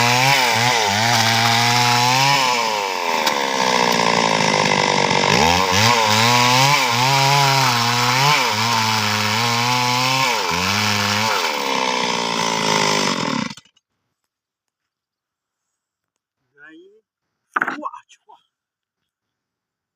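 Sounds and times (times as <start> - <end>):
chainsaw cutting wood: 0.0 - 13.8.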